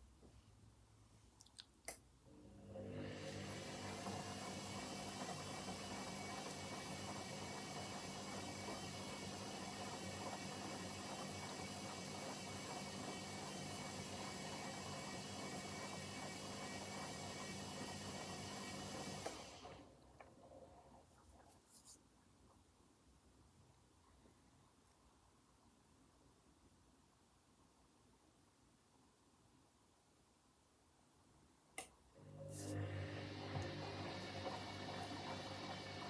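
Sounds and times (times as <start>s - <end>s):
washing machine humming: 2.3s - 20.6s, 32.2s - 36.0s.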